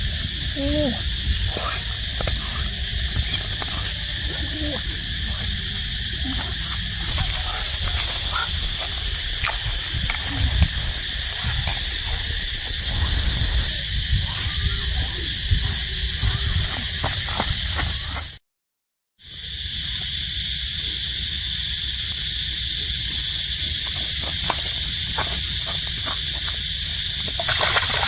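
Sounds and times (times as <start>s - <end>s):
low rumble: 0.0s - 17.0s
high-pitched animal drone: 0.0s - 18.3s.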